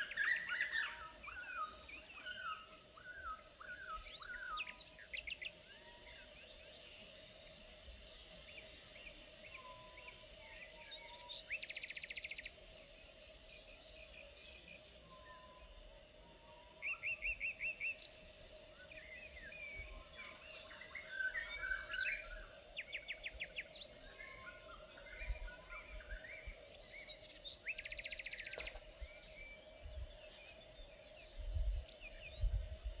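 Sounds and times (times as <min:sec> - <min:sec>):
songbirds chirping and trilling: 0:00.0 - 0:33.0.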